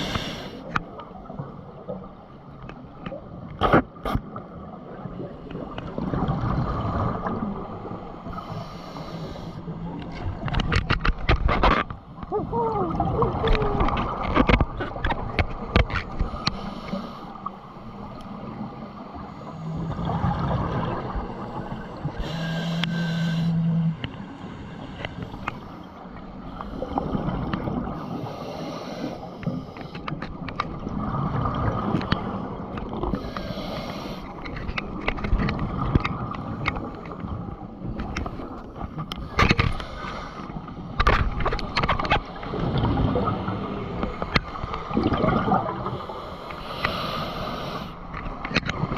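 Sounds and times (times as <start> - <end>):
regulator inhalation hiss: 0.0 - 0.7, 22.2 - 23.6, 33.2 - 34.3, 46.0 - 48.0
clicks and crackles underwater: 0.0 - 48.9
gurgling exhaled bubbles: 42.5 - 46.2.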